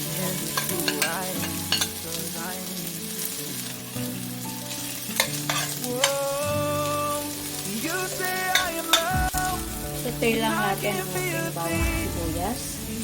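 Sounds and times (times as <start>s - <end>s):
garlic and onion sizzling in oil: 0.0s - 13.0s
utensil clicking against pan: 0.5s - 2.0s, 5.2s - 6.2s, 8.5s - 9.2s.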